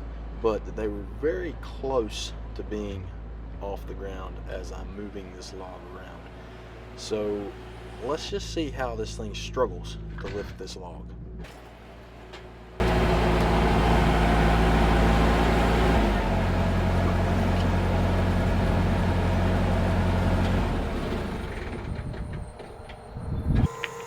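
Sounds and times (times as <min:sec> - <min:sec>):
diesel engine running hard: 0:04.7 - 0:08.7, 0:11.6 - 0:23.0.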